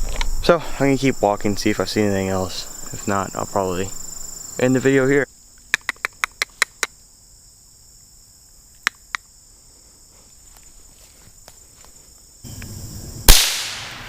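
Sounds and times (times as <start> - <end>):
footstep crunches: 0.0 - 5.2
insects chirring: 0.0 - 14.0
rifle shot with echo: 13.3 - 14.0.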